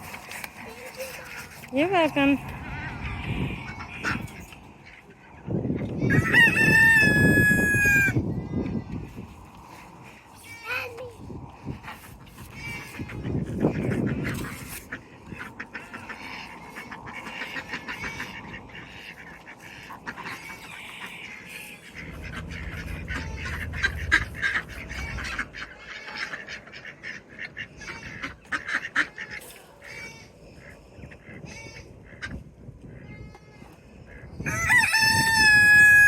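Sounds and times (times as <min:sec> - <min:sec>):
ducks quacking: 0:00.5 - 0:06.9, 0:11.6 - 0:32.5
low rumble: 0:01.6 - 0:06.1, 0:21.8 - 0:26.3.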